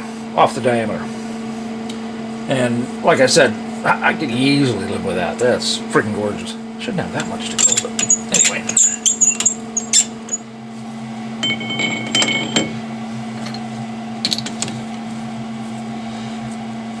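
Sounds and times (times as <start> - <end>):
metal lathe humming: 6.8 - 17.0
ringing metal clink: 11.4 - 12.8.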